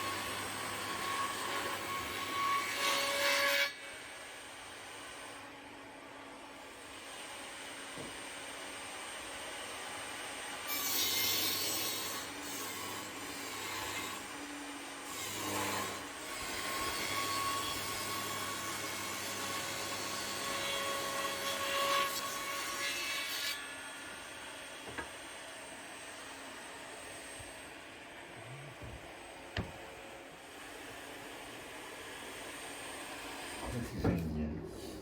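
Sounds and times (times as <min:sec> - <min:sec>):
saw rasping through wood: 0:10.6 - 0:27.6.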